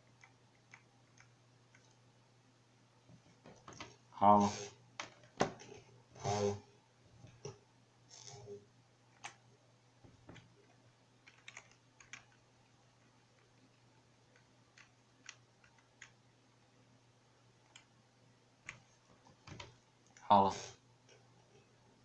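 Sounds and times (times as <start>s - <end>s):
low steady hum: 0.0s - 22.0s
keyboard typing clicks: 11.2s - 12.4s.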